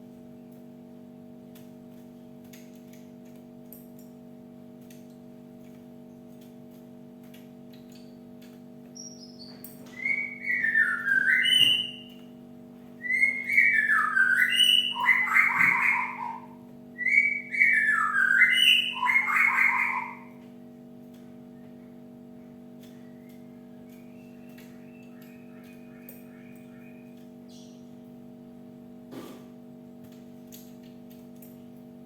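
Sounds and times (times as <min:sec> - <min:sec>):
bird singing whistled notes: 0:09.0 - 0:12.3, 0:13.0 - 0:20.4, 0:22.9 - 0:27.9.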